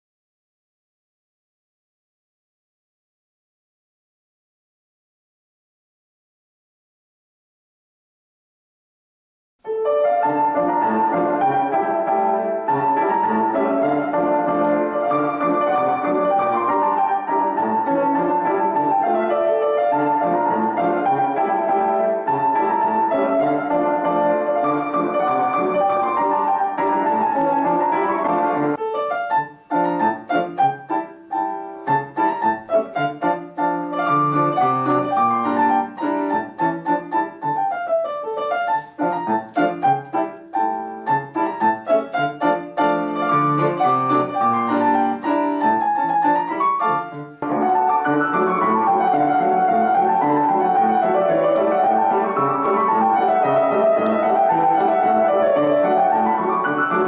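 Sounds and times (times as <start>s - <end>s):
solo piano playing a polka: 9.6s - 57.0s.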